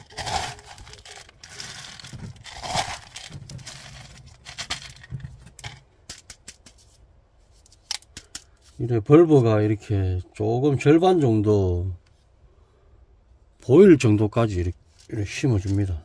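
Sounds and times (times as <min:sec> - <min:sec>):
potting stones rattling and crunching: 0:00.0 - 0:07.0, 0:14.9 - 0:16.0.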